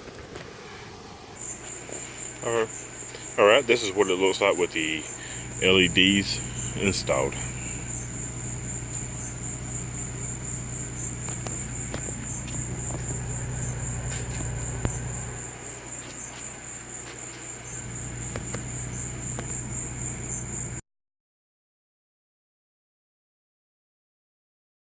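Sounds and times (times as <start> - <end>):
crickets chirping: 0.0 - 20.8
low steady hum: 0.0 - 20.8.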